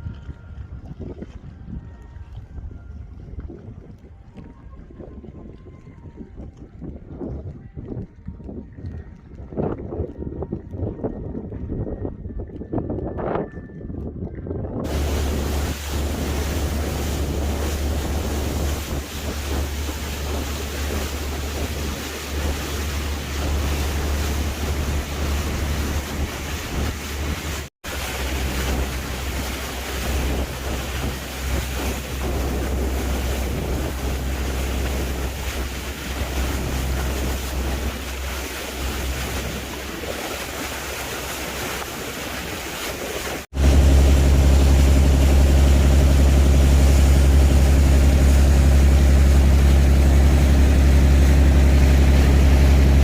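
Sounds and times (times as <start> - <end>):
wind buffeting microphone: 0.0 - 53.0
sea waves washing: 14.8 - 53.0
steady engine hum: 14.9 - 53.0.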